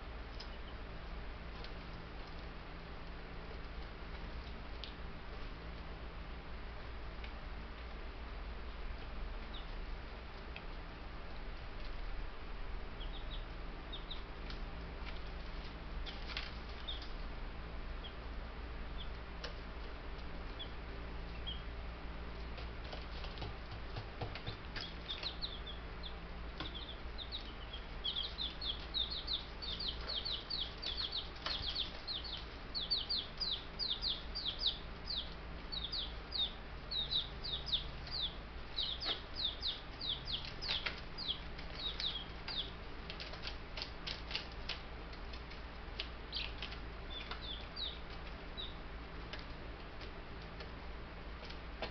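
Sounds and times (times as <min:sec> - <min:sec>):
low steady hum: 0:00.0 - 0:51.9
chicks peeping: 0:00.3 - 0:00.9, 0:09.0 - 0:09.9, 0:12.8 - 0:50.8.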